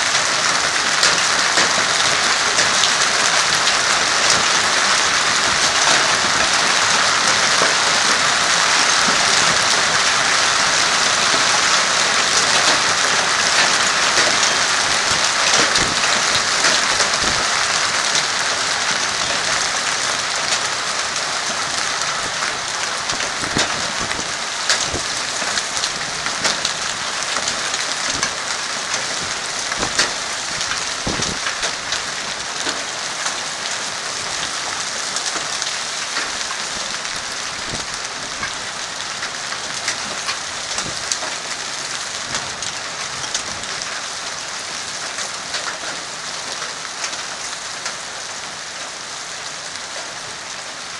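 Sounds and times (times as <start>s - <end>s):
hail and rain pattering: 0.0s - 50.9s
hailstone impacts: 27.4s - 31.9s.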